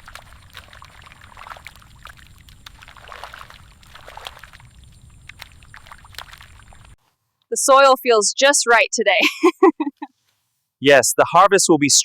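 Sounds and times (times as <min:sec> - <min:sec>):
steady low rumble: 0:00.0 - 0:07.0
water splashing in mud: 0:00.0 - 0:07.0.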